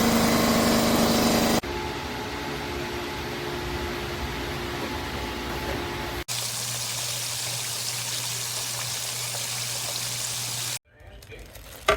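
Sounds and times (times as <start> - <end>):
food sizzling in skillet: 6.3 - 10.8.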